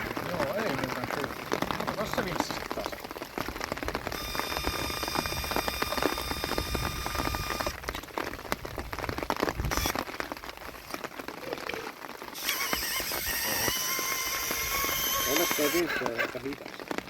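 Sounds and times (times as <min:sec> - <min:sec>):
rain pattering: 0:00.0 - 0:17.0
electric winch motor whining: 0:04.1 - 0:07.8, 0:12.4 - 0:15.8.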